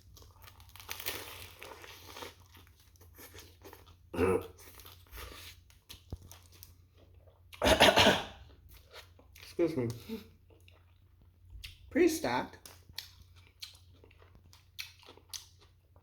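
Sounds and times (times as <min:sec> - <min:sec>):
person chewing: 0:00.0 - 0:11.9, 0:12.6 - 0:16.0
wrapper crinkling: 0:00.1 - 0:02.4
loud burp: 0:04.1 - 0:04.5, 0:07.6 - 0:08.4.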